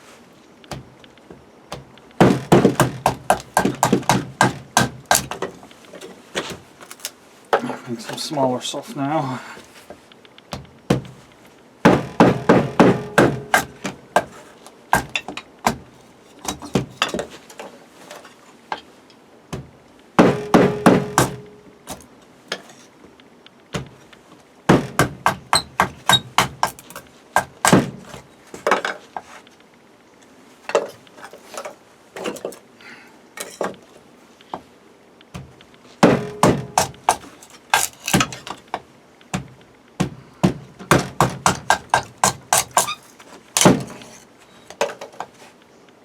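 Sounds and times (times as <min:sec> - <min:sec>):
chopping strikes into wood: 0:01.7 - 0:05.5, 0:11.8 - 0:14.4, 0:15.0 - 0:17.2, 0:19.5 - 0:22.1, 0:24.7 - 0:28.2, 0:35.4 - 0:38.6, 0:39.3 - 0:42.9, 0:43.6 - 0:44.0.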